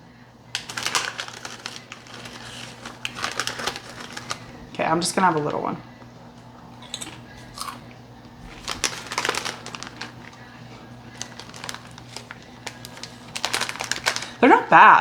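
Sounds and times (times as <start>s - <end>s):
faint steady hum: 0.0s - 15.0s
crunching potato chip: 0.5s - 4.7s, 6.8s - 14.4s
chip bag crinkling: 0.5s - 5.8s, 6.5s - 14.7s.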